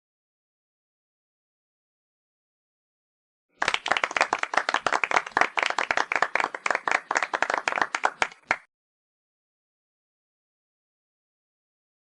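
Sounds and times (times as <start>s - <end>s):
rapid hand clapping: 3.6s - 8.7s.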